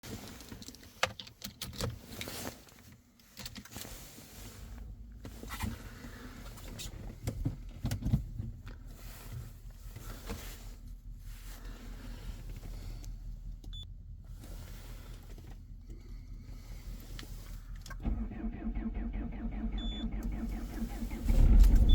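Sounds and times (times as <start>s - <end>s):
diesel engine knocking rumble: 7.2s - 21.9s.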